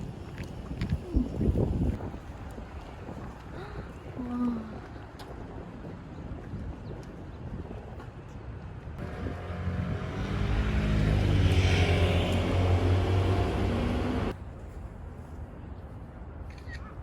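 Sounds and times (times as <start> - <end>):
motor vehicle passing: 9.0 - 14.4.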